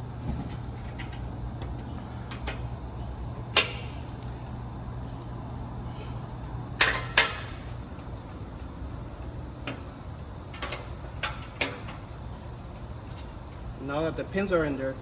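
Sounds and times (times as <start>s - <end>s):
allen key clanking on metal bolts: 6.8s - 7.7s.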